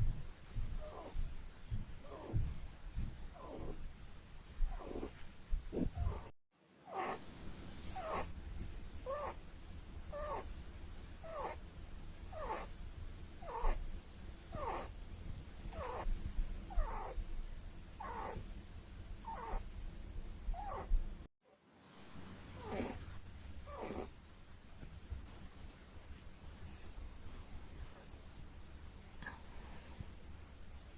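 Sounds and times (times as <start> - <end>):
rabbit snoring: 0.0 - 1.4, 2.0 - 4.0, 4.6 - 9.4, 10.0 - 15.0, 15.6 - 17.3, 17.9 - 18.6, 19.2 - 19.7, 20.4 - 21.3, 22.0 - 24.3, 26.6 - 27.2
low steady rumble: 0.0 - 6.3, 7.2 - 21.3, 21.9 - 30.9.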